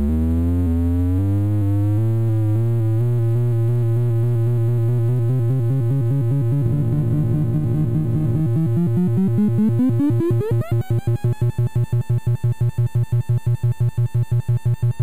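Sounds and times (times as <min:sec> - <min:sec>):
stuttering electronic tone: 0:05.0 - 0:12.5.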